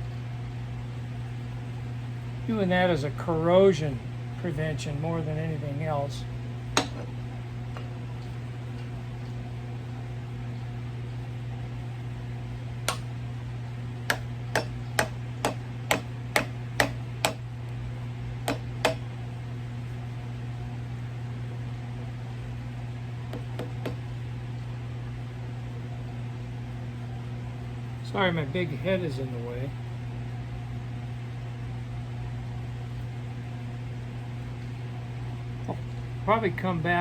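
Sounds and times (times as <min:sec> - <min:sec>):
cooler fan humming: 0:00.0 - 0:37.0
sharp knocks: 0:12.9 - 0:13.1, 0:14.1 - 0:17.4, 0:18.5 - 0:19.0.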